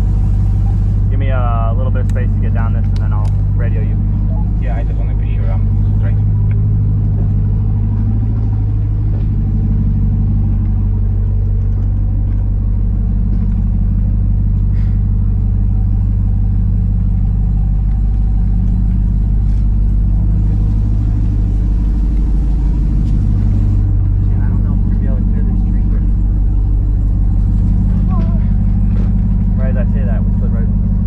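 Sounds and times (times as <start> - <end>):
engine running steadily: 0.0 - 31.0.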